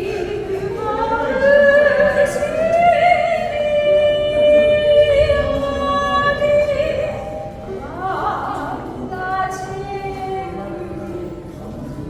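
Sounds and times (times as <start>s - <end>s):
person singing long notes: 0.0s - 8.6s.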